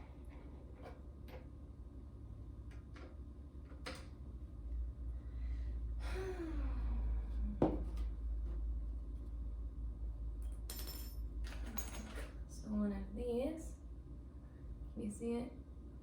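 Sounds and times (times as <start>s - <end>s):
steady low hum: 0.0s - 16.0s
person sighing: 6.0s - 7.2s.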